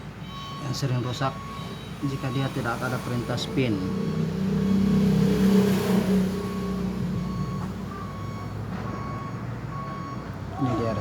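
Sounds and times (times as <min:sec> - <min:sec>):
motor vehicle engine hum: 0:00.0 - 0:11.0.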